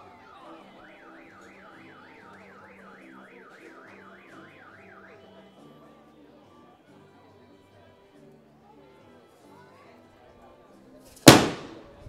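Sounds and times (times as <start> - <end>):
faint car alarm siren warbling: 0.0 - 6.1.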